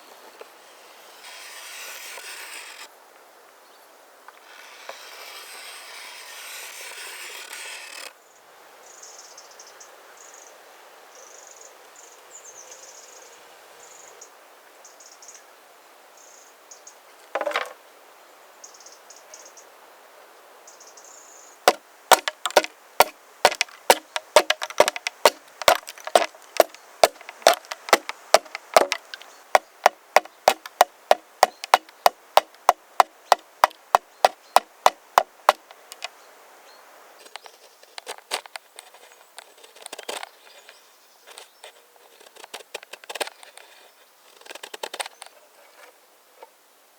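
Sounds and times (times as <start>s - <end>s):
rasping hiss: 0.5s - 2.9s
axe chopping wood: 21.7s - 36.1s
sharp knock: 21.7s - 36.1s.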